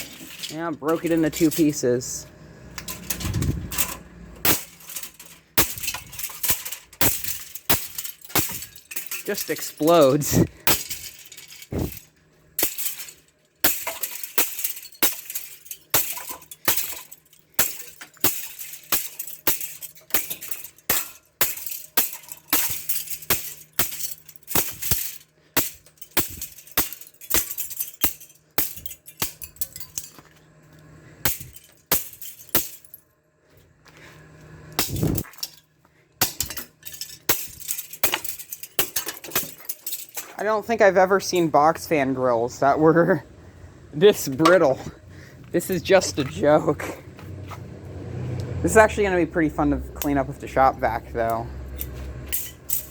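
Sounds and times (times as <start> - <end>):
wrench striking plastic fan grill: 2.8 - 10.0, 12.6 - 30.1.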